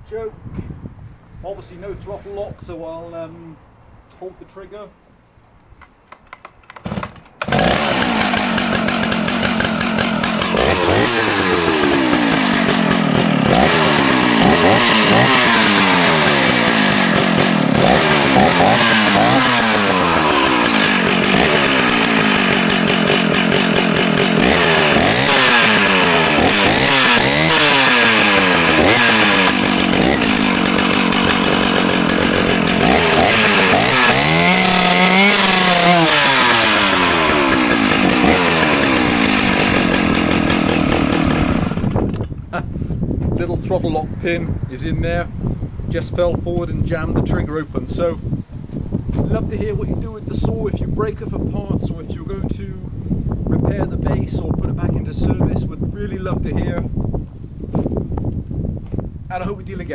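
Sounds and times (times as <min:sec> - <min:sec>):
chainsaw engine revving: 0:06.8 - 0:42.2.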